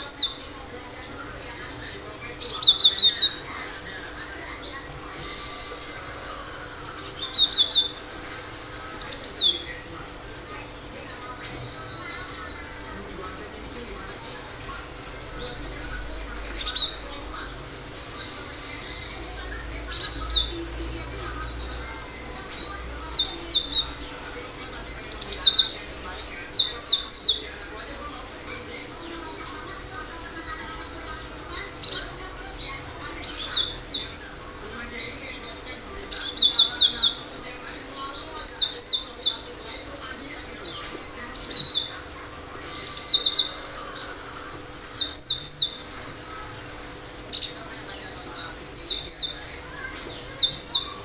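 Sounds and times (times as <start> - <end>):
bird singing whistled notes: 6.9 - 8.1.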